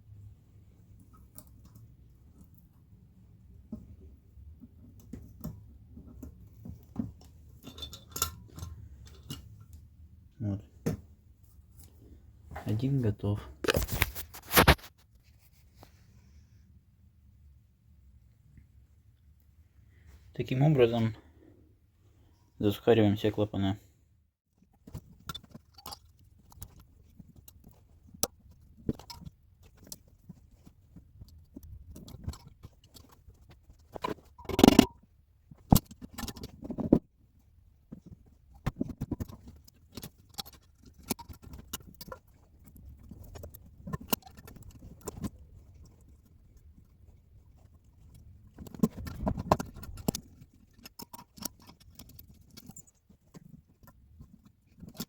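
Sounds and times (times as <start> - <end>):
metal clicks and clinks: 7.6 - 9.5.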